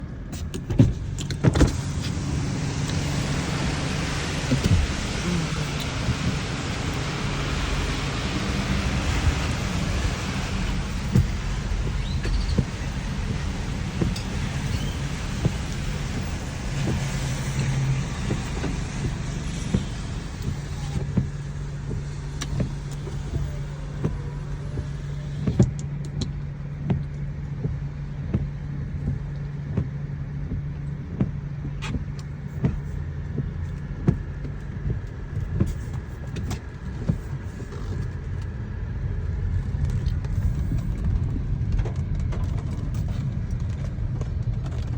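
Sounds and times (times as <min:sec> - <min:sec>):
truck engine idling: 0:00.0 - 0:27.2
rain tapping: 0:00.4 - 0:44.9.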